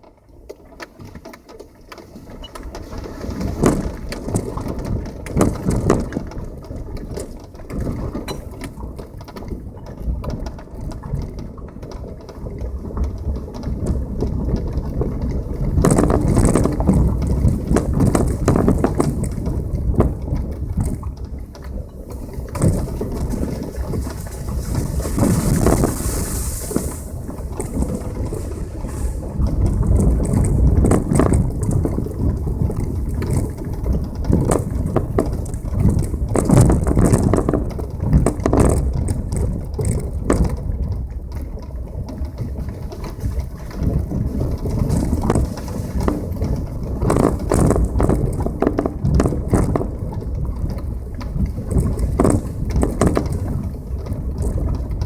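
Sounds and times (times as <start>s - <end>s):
car knocks and bumps: 15.8s - 21.1s, 51.6s - 53.8s
tyres crunching on gravel: 22.6s - 31.9s.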